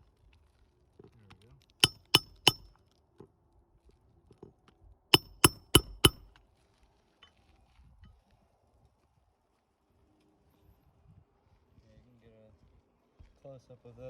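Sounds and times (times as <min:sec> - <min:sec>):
hammer striking metal: 0:01.8 - 0:02.7, 0:05.2 - 0:06.3.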